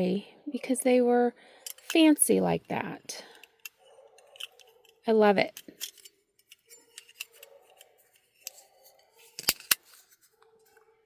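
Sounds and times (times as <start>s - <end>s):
metal ashtray clicks and scrapes: 1.7s - 10.3s.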